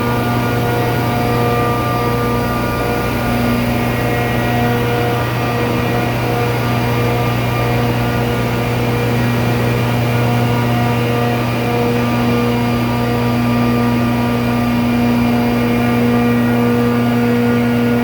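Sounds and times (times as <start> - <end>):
compressor droning: 0.0 - 18.0.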